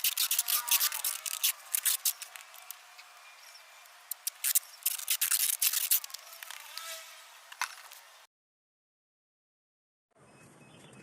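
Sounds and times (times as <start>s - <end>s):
packing material rustling: 0.0s - 2.7s, 4.1s - 6.6s.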